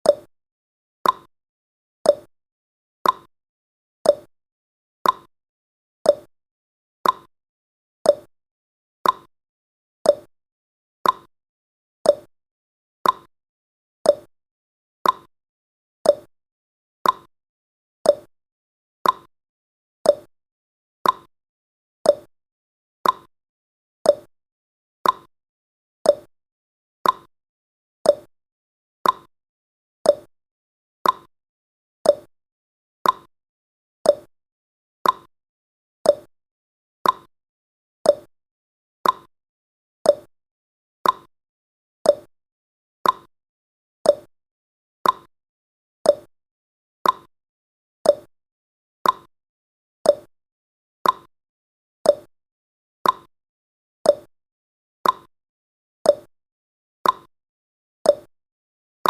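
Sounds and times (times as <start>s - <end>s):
timer ticking: 1.0s - 1.3s, 2.1s - 2.3s, 3.0s - 3.3s, 4.1s - 4.3s, 5.0s - 5.3s, 6.1s - 6.3s, 7.0s - 7.3s, 8.1s - 8.3s, 9.0s - 9.3s, 10.1s - 10.3s, 11.0s - 11.3s, 12.1s - 12.3s, 13.0s - 13.3s, 14.1s - 14.3s, 15.0s - 15.3s, 16.1s - 16.3s, 17.0s - 17.3s, 18.1s - 18.3s, 19.0s - 19.3s, 20.1s - 20.3s, 21.0s - 21.3s, 22.1s - 22.3s, 23.0s - 23.3s, 24.1s - 24.3s, 25.0s - 25.3s, 26.1s - 26.3s, 27.0s - 27.3s, 28.1s - 28.3s, 29.0s - 29.3s, 30.0s - 30.3s, 31.0s - 31.3s, 32.0s - 32.3s, 33.0s - 33.3s, 34.1s - 34.3s, 35.0s - 35.3s, 36.0s - 36.3s, 37.0s - 37.3s, 38.1s - 38.3s, 39.0s - 39.3s, 40.1s - 40.3s, 41.0s - 41.3s, 42.1s - 42.3s, 43.0s - 43.3s, 44.1s - 44.3s, 45.0s - 45.3s, 46.1s - 46.3s, 47.0s - 47.3s, 48.0s - 48.3s, 49.0s - 49.3s, 50.1s - 50.3s, 51.0s - 51.3s, 52.1s - 52.3s, 53.0s - 53.3s, 54.1s - 54.3s, 55.0s - 55.3s, 56.1s - 56.3s, 57.0s - 57.3s, 58.1s - 58.3s.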